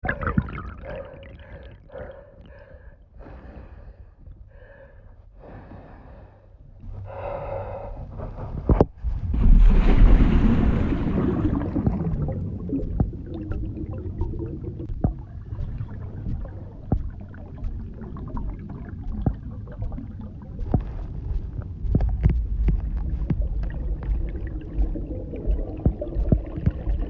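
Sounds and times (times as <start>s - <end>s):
water bubbling and gurgling: 0.0s - 2.9s, 9.1s - 27.0s.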